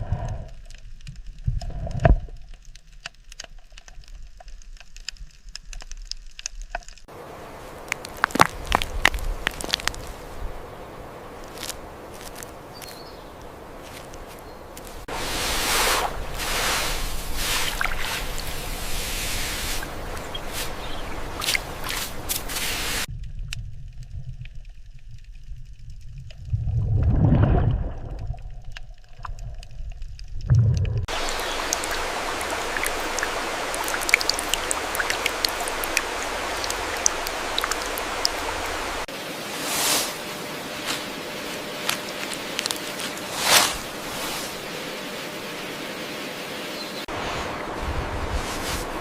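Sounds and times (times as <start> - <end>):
stream water running: 7.0 - 23.1, 31.0 - 49.0
low rumble: 23.0 - 31.1.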